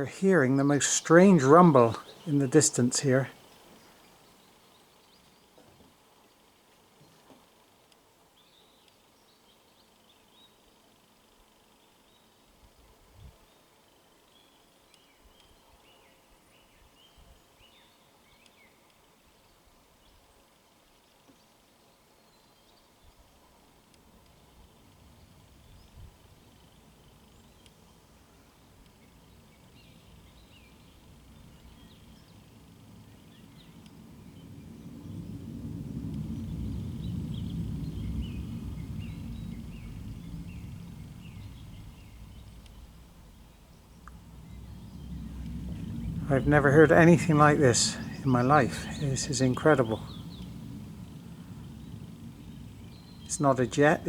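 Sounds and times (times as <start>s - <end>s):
faint distant rumble: 0.0s - 3.9s, 24.0s - 54.0s
faint bird chirping: 0.0s - 54.0s.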